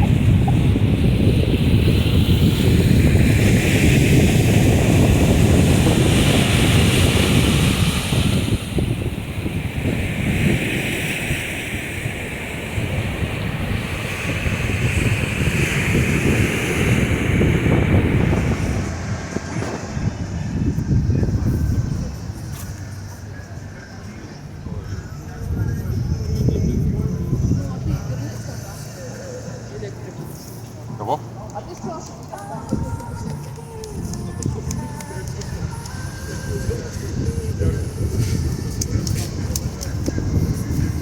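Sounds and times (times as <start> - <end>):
surf washing onto shore: 0.0 - 23.3, 32.7 - 41.0
wind rumble on microphone: 0.0 - 41.0.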